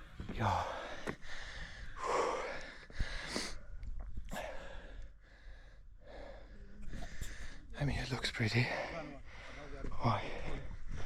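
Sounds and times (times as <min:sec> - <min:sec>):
person breathing hard: 0:00.5 - 0:07.7.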